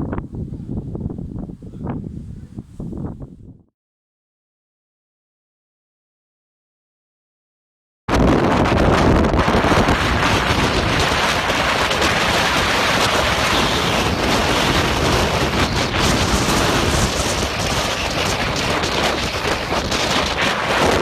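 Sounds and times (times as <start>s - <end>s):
strong wind on microphone: 0.0s - 3.7s, 8.1s - 21.0s.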